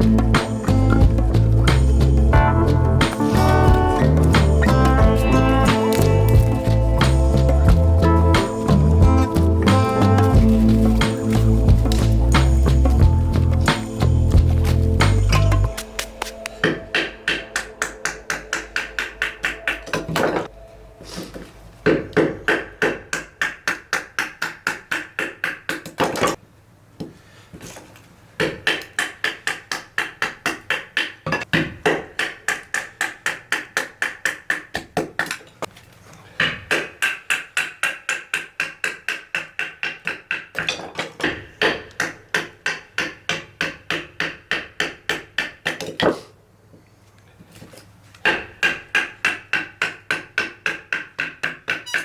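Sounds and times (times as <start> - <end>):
hammering blows on firewood: 3.0 - 15.8.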